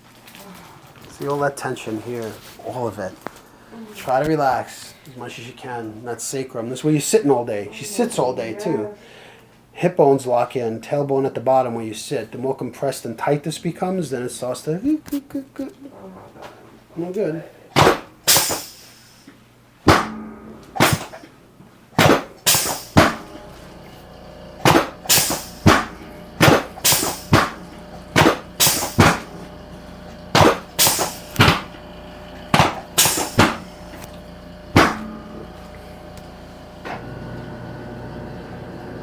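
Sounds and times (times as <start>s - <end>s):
back cracking knocks: 19.9s - 21.3s, 22.0s - 36.8s.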